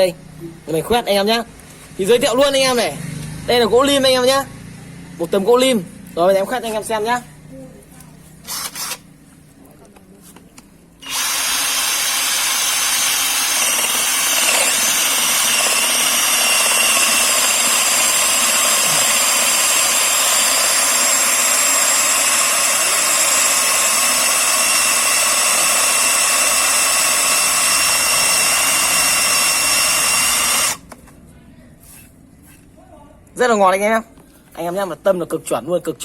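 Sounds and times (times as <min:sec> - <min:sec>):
cordless drill boring into wood: 0:08.5 - 0:09.0, 0:11.0 - 0:30.9.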